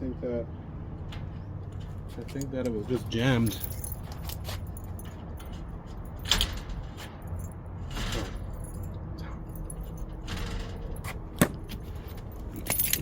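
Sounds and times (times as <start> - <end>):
metallic clicks and clinks of keys: 2.3 - 11.2, 11.9 - 13.0.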